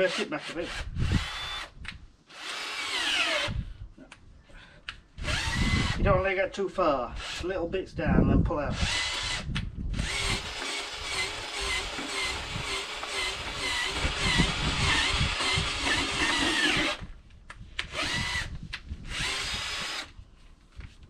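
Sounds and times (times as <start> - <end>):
power drill boring into clay soil: 0.0 - 3.7, 5.2 - 6.1, 8.7 - 17.2, 17.8 - 20.2.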